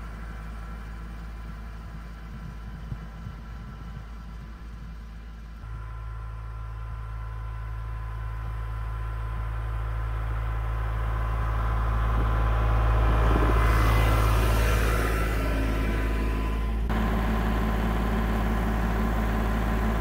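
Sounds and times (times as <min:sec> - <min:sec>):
vehicle engine running: 0:00.0 - 0:20.0.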